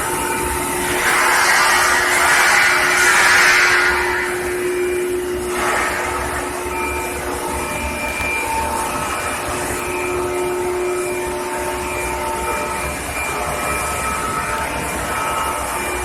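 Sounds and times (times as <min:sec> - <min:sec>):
industrial machinery hum: 0:00.0 - 0:16.0
machinery whining tones: 0:00.0 - 0:16.0.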